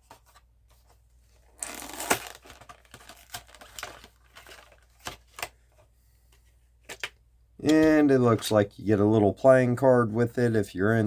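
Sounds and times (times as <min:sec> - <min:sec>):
plastic packaging crinkling: 0:01.5 - 0:05.5.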